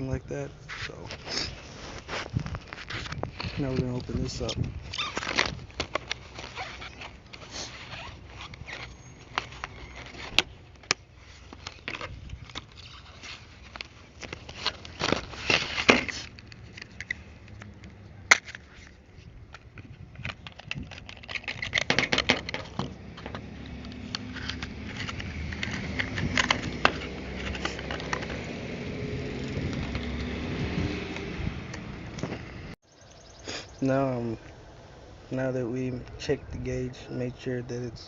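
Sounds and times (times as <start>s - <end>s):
packaging crinkling: 4.9s - 17.2s.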